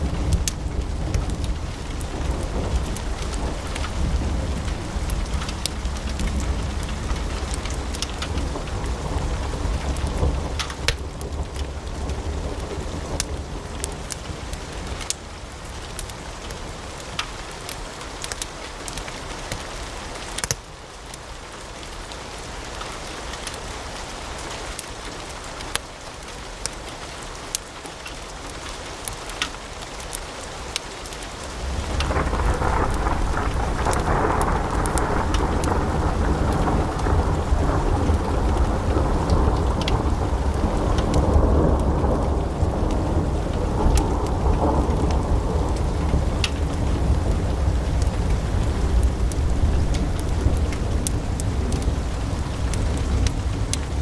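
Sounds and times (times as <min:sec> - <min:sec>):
fire low rumble: 0:00.0 - 0:18.4, 0:31.4 - 0:54.0
wood fire crackling: 0:00.0 - 0:54.0
fire rushing hiss: 0:31.4 - 0:54.0.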